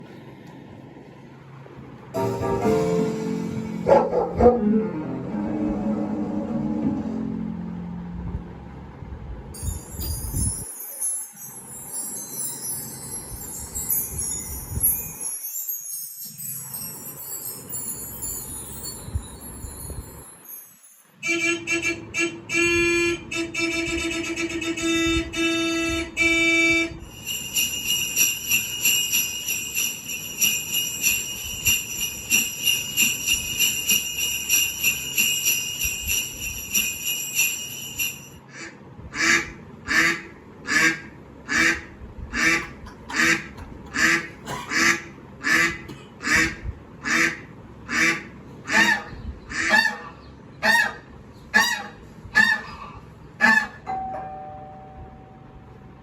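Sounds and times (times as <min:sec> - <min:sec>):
short repeated pitched notes: 0:02.2 - 0:08.1
steady high ringing: 0:02.2 - 0:08.8, 0:09.6 - 0:21.2, 0:27.0 - 0:38.5, 0:53.9 - 0:56.0
regular honks: 0:21.2 - 0:27.0.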